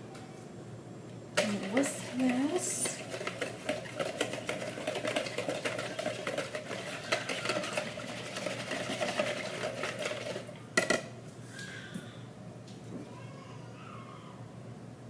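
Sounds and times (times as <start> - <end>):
whisk clicking in bowl: 1.4 - 11.0.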